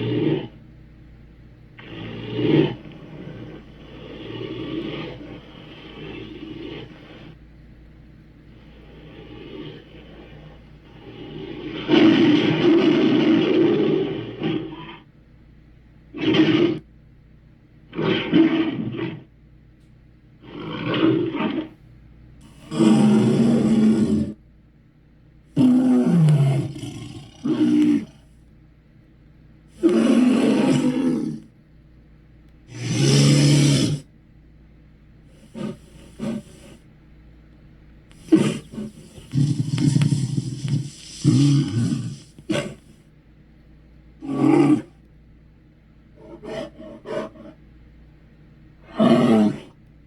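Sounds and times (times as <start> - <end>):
dog's harsh roar-like calls: 1.8 - 7.4, 8.8 - 15.0, 16.2 - 16.8, 17.9 - 19.3, 20.4 - 21.8, 22.4 - 24.4, 25.6 - 28.3, 29.8 - 31.4, 32.7 - 34.1, 35.4 - 36.8, 38.1 - 42.9, 44.2 - 45.0, 46.2 - 47.6, 48.8 - 49.8
dog calling deeply: 35.4 - 36.8, 38.1 - 42.9, 46.2 - 47.6.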